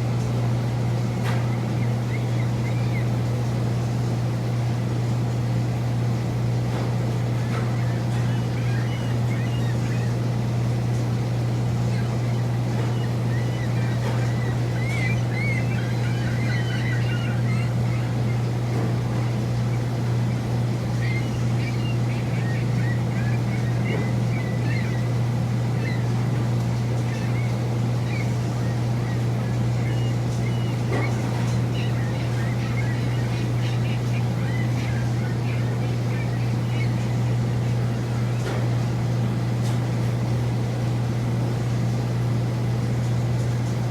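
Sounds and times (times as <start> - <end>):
low mechanical hum: 0.0 - 43.9
high chirping calls: 0.9 - 3.6, 7.4 - 10.6, 11.5 - 38.8.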